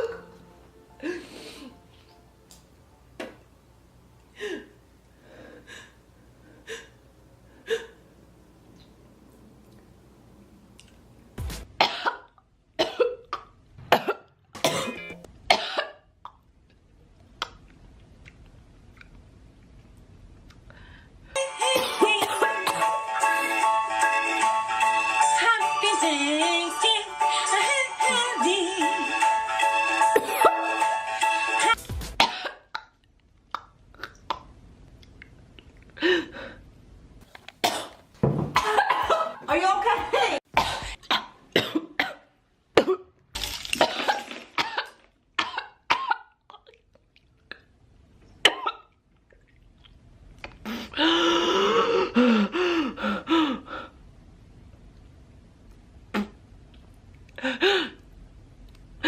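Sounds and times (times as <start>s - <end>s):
woman coughing hard: 11.8s - 13.2s, 13.9s - 16.0s, 21.8s - 22.8s, 32.2s - 32.7s, 37.6s - 39.4s, 40.0s - 42.2s, 43.8s - 46.3s.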